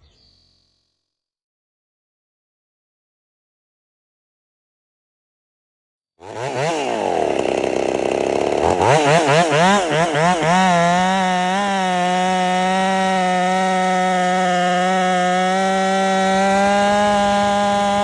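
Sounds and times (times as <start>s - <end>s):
chainsaw revving: 6.2s - 18.0s.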